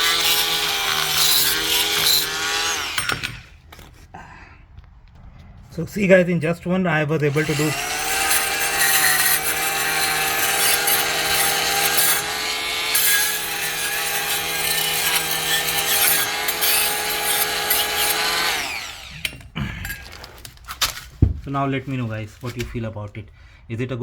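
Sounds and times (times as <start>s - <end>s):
blade scraping concrete: 7.2s - 19.2s
oscillating multi-tool whining: 7.3s - 19.4s.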